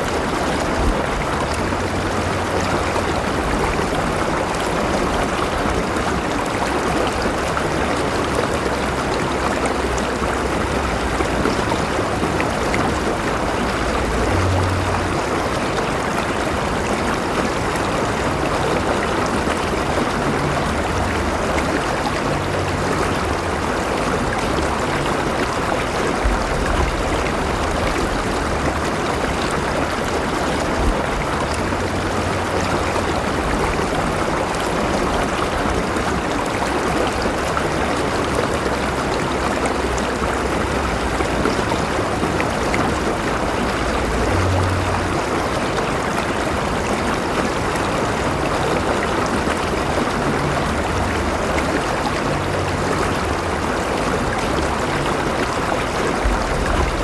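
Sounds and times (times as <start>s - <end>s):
river water rushing over rocks: 0.0s - 57.0s
low rumble: 20.1s - 36.2s, 50.0s - 57.0s.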